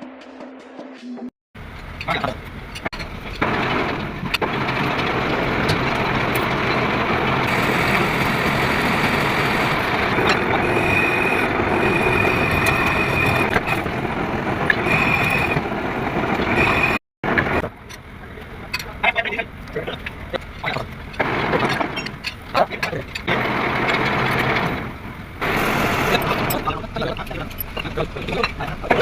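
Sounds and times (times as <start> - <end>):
high-pitched cutting whine: 1.6 - 29.0
metal lathe grinding: 1.7 - 17.6, 19.6 - 29.0.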